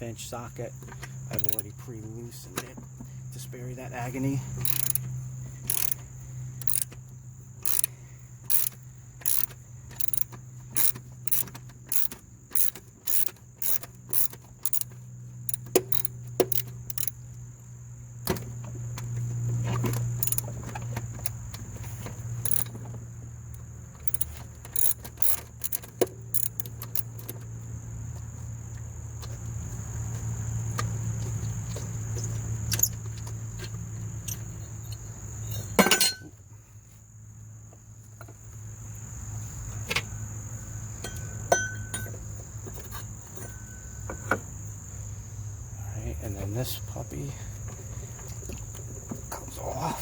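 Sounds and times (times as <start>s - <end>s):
crickets chirring: 0.0s - 50.0s
socket wrench clicking on metal: 1.3s - 1.7s, 4.6s - 5.1s, 5.7s - 6.0s, 6.6s - 7.0s, 7.6s - 7.9s, 8.5s - 14.9s, 15.5s - 17.2s, 20.2s - 20.5s, 22.4s - 22.7s, 24.0s - 27.3s.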